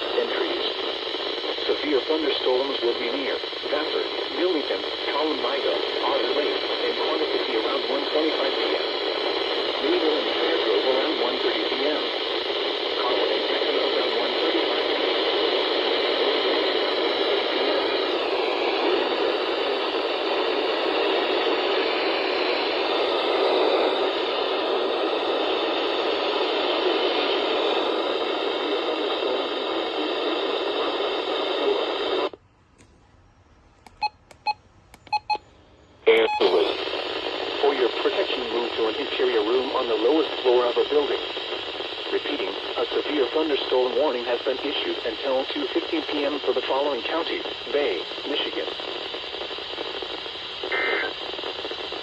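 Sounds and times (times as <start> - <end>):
radio static hiss: 0.0 - 32.4, 36.0 - 52.0
short clicks: 33.8 - 35.3.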